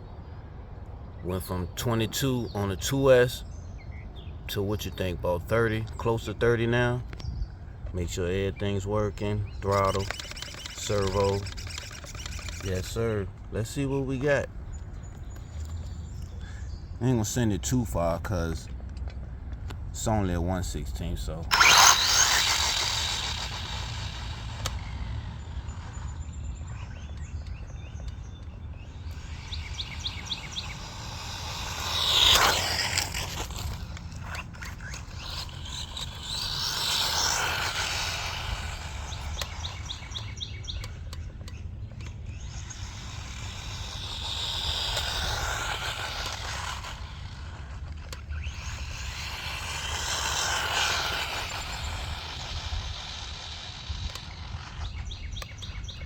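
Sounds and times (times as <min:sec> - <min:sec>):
birds chirping faintly: 0:00.0 - 0:56.0
electric motor whining: 0:09.2 - 0:13.0, 0:21.4 - 0:55.9.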